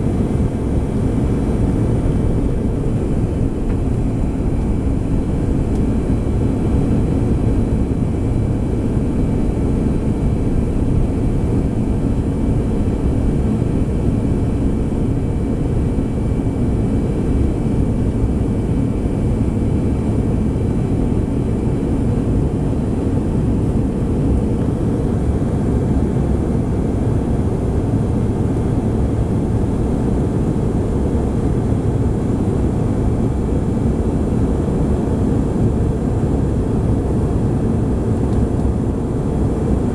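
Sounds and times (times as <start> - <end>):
jet cabin engine and airflow roar: 0.0 - 39.9.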